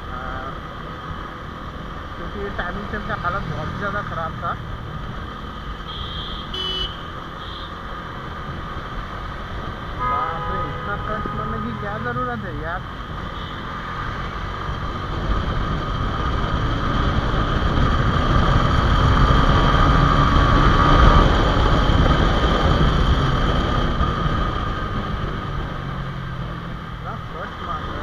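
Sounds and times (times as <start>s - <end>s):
motorcycle engine: 0.0s - 28.0s
traffic noise: 0.0s - 28.0s
wind rushing over microphone: 8.0s - 28.0s.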